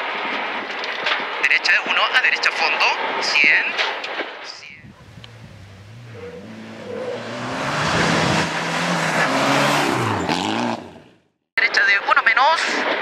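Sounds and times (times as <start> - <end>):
tyre and road rush: 4.6 - 11.4
car engine accelerating: 5.0 - 11.2.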